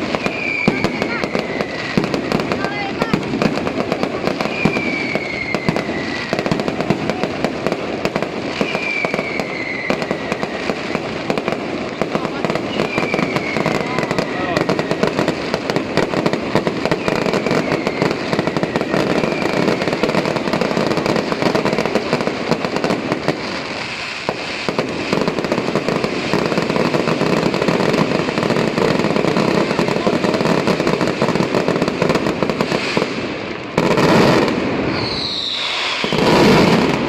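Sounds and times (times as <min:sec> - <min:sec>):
firecrackers popping: 0:00.0 - 0:37.0
firework blast: 0:00.0 - 0:37.0
falling whistle: 0:00.2 - 0:02.0, 0:04.5 - 0:06.4, 0:08.6 - 0:10.6, 0:12.7 - 0:15.1, 0:17.0 - 0:19.8, 0:34.9 - 0:36.2.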